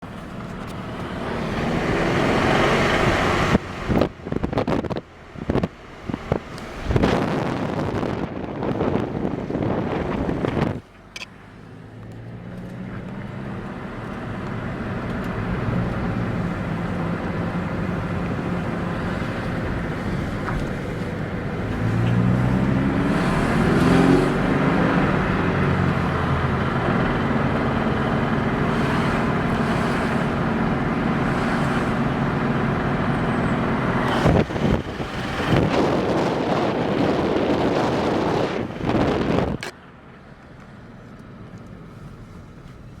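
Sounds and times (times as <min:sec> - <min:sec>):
car engine revving: 0:00.0 - 0:10.8, 0:11.5 - 0:39.7
engine knocking: 0:26.0 - 0:35.7.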